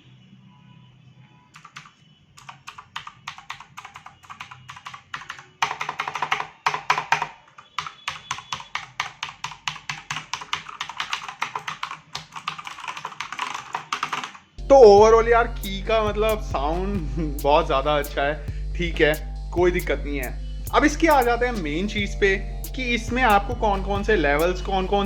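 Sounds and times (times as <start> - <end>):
clicky mechanical keyboard typing: 1.6 - 14.5.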